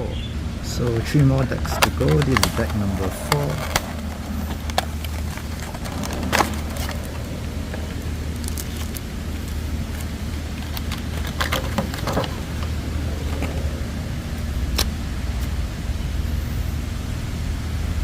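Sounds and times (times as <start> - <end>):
car engine idling: 0.0 - 18.0
card deck unwrapping crackles: 1.7 - 13.8.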